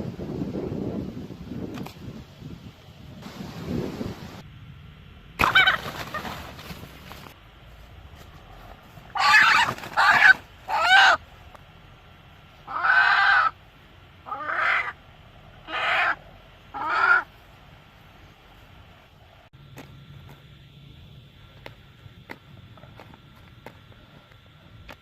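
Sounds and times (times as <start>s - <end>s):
chicken squawking: 5.4s - 6.7s, 9.1s - 11.2s, 12.6s - 13.6s, 14.2s - 15.0s, 15.6s - 17.4s.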